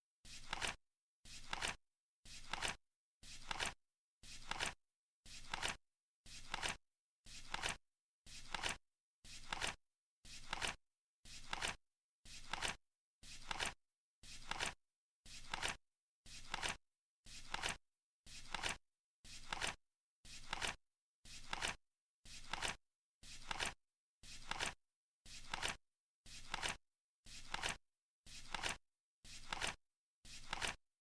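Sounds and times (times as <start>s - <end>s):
flip clock cards flapping: 0.4s - 0.8s, 1.4s - 1.8s, 2.4s - 2.8s, 4.4s - 4.8s, 6.4s - 6.8s, 9.4s - 9.8s, 19.4s - 19.8s, 25.4s - 25.8s, 26.4s - 26.8s, 28.5s - 28.8s, 29.4s - 29.8s, 30.4s - 30.8s.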